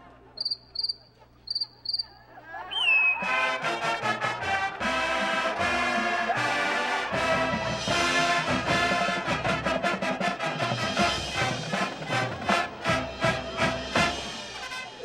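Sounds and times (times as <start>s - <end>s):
brass section playing: 3.1s - 15.0s.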